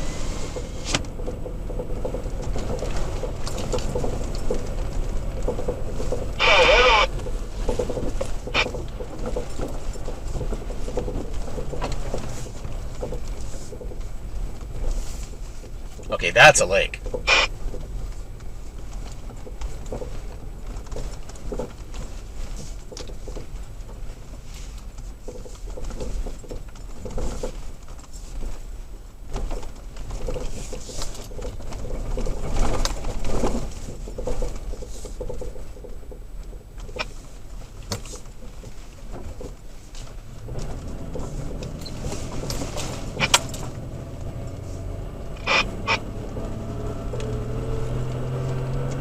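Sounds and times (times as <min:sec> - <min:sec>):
truck knocks and rattles: 0:00.0 - 0:06.4, 0:07.1 - 0:16.2, 0:17.0 - 0:49.0
truck engine drone: 0:00.0 - 0:14.6, 0:16.0 - 0:17.6, 0:40.3 - 0:49.0.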